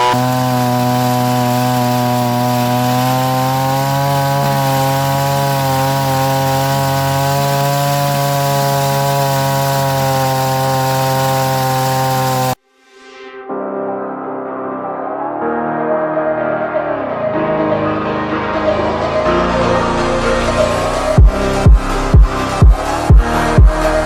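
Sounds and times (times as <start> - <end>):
chainsaw cutting through log: 0.0 - 12.6, 18.9 - 24.0.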